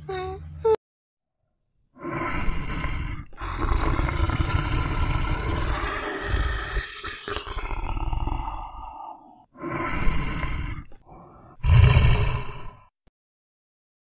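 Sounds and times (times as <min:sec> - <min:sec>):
large animal roaring: 0:02.0 - 0:12.9.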